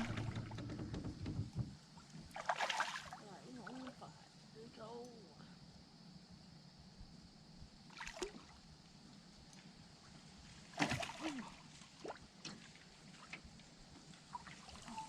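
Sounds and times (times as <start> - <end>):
fish splashing in water: 0.0 - 0.6, 2.3 - 3.2, 10.8 - 11.6.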